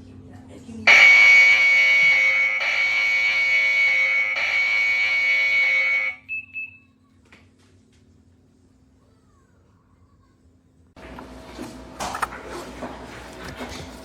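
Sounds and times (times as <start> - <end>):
alarm siren high-pitched tone: 0.9 - 6.2
short beeps: 0.9 - 6.8.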